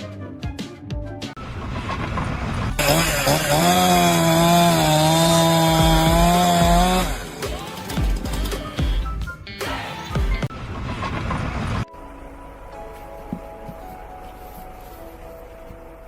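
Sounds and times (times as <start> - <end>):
power saw cutting: 2.8 - 7.9.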